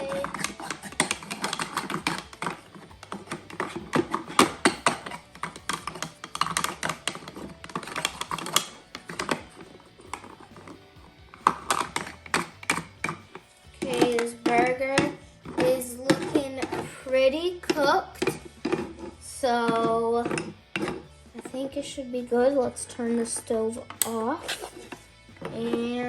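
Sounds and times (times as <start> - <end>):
toy pieces clicking and tapping: 0.0 - 16.9.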